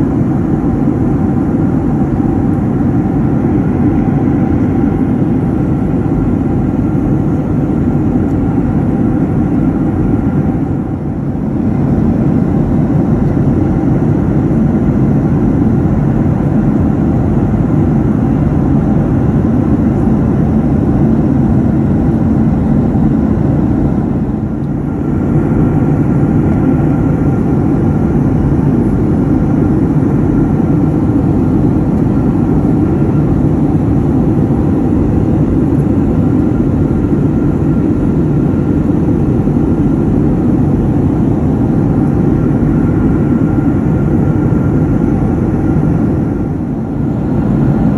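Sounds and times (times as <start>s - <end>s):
airliner cabin engine roar: 0.0s - 47.9s.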